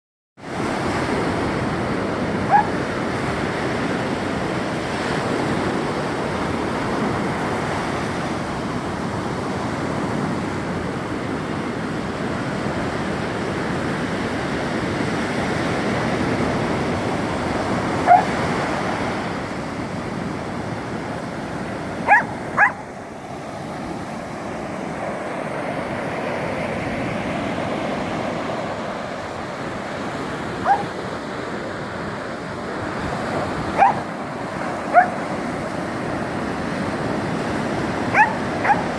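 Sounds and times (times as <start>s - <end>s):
wind: 0.4s - 38.9s
ocean surf: 0.5s - 38.9s
dog barking high: 2.4s - 2.8s, 18.0s - 18.4s, 22.0s - 23.1s, 30.6s - 31.0s, 33.7s - 35.9s, 38.1s - 38.9s.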